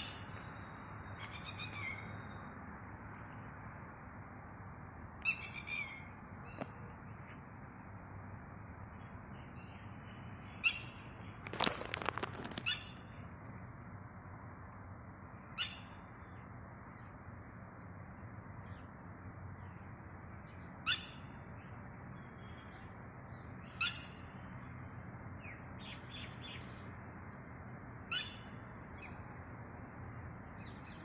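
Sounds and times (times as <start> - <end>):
bird calling: 0.0 - 0.4.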